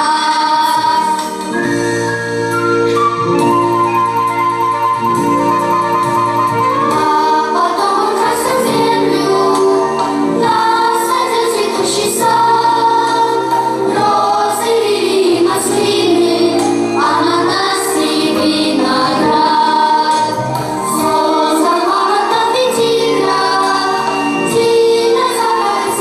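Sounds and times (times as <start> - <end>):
choir singing: 0.0 - 1.4, 6.9 - 26.0
instrumental accompaniment: 0.0 - 26.0.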